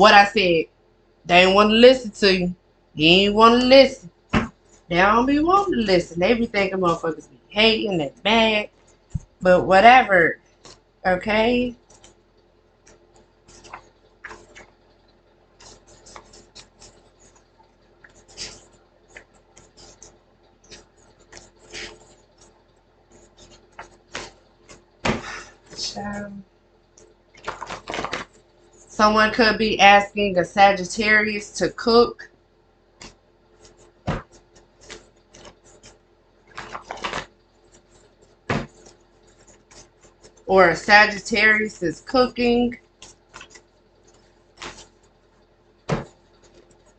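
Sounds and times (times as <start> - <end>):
faint hum: 0.0 - 46.9
light clicks and scratches: 10.4 - 24.9, 33.0 - 46.9.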